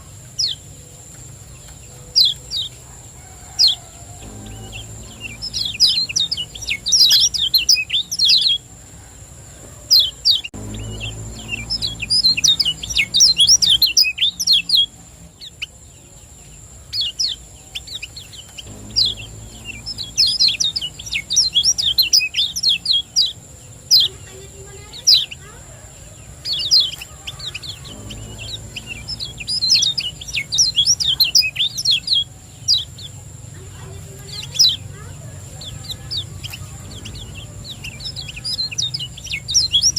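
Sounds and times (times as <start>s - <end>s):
thin high whine: 3.2s - 9.1s, 10.5s - 15.5s, 18.6s - 23.3s, 27.4s - 32.8s
bird singing rapid high chirps: 3.5s - 8.7s, 9.9s - 15.9s, 16.9s - 25.6s, 26.2s - 39.9s.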